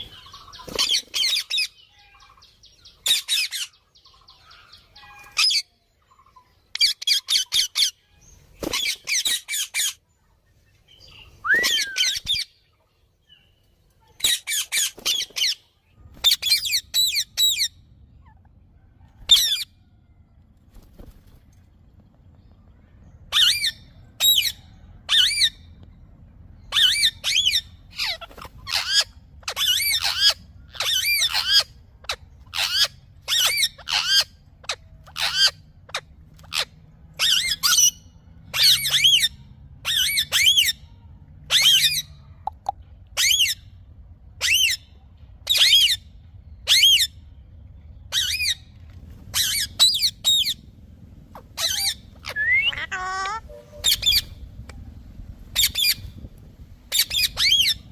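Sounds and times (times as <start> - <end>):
parakeet squawking: 26.7 - 40.8, 51.3 - 54.4, 56.9 - 57.9.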